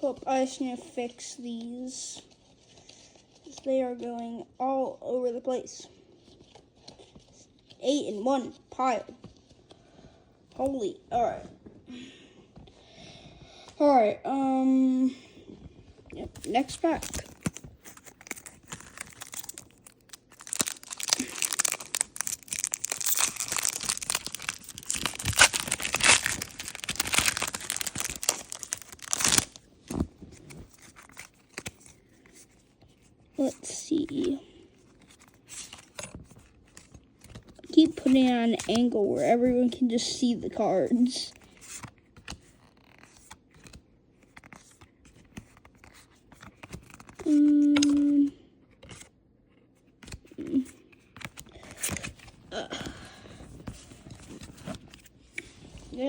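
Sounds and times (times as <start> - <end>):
cards and foil pack rustling: 16.2 - 39.8, 40.5 - 49.1, 49.8 - 56.0
foil wrapper crinkling and tearing: 16.4 - 32.5.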